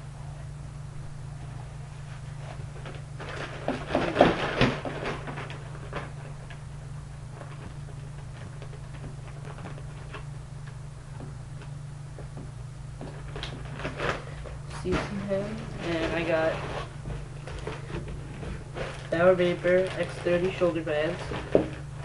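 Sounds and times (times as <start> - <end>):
steady low hum: 0.0 - 22.0
packaging rustling and clattering: 2.4 - 6.6, 13.0 - 22.0.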